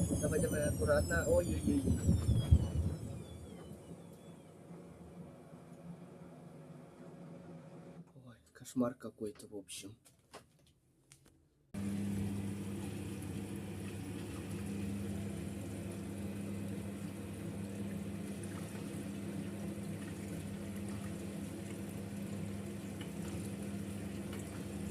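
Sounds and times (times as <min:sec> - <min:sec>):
washing machine water rushing: 0:00.0 - 0:07.4, 0:11.8 - 0:24.9
washing machine low hum: 0:00.0 - 0:08.0, 0:11.8 - 0:24.9.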